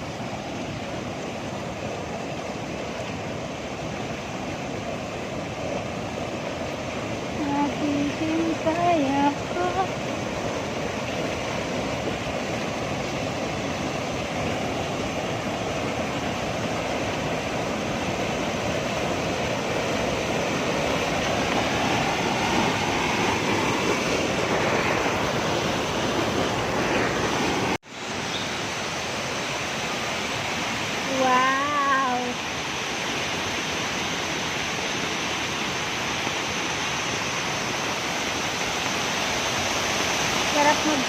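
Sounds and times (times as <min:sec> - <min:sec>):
flowing water rushing: 0:00.0 - 0:41.0.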